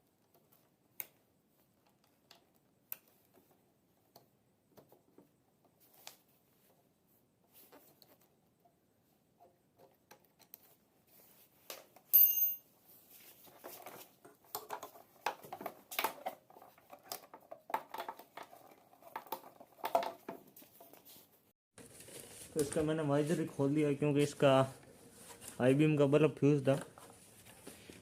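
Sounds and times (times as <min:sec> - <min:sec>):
sharp metallic clink: 0:12.1 - 0:12.7.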